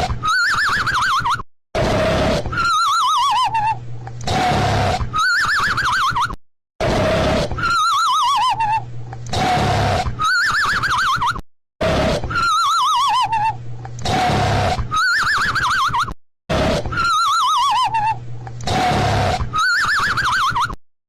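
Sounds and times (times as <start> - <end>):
cartoon snoring with whistle: 1.8 - 3.4, 4.2 - 6.0, 6.8 - 11.1, 11.8 - 15.8, 16.5 - 20.8.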